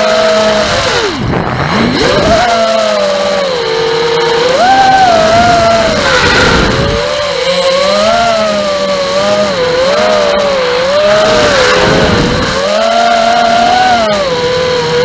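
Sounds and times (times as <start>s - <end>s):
drone motors whining: 0.0s - 15.0s
rushing air: 0.6s - 12.8s.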